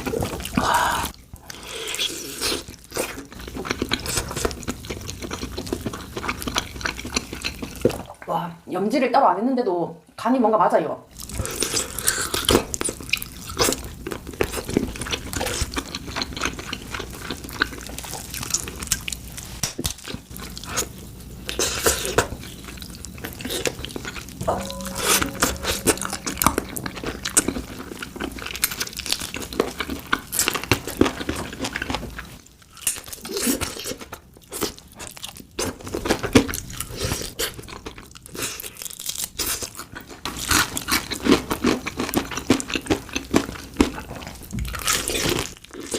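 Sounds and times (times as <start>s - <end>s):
chewing: 0.0s - 8.1s, 11.2s - 45.9s
crispy crust crunching: 27.0s - 45.9s.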